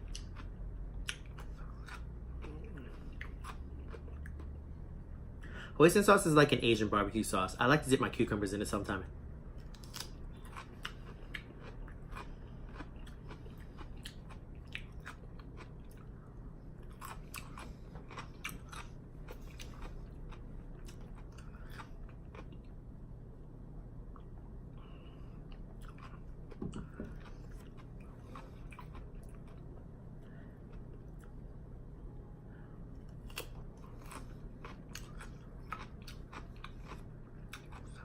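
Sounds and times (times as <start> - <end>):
crunching and chewing cucumber: 0.0 - 4.8, 9.6 - 22.8, 25.5 - 29.9, 33.1 - 38.0.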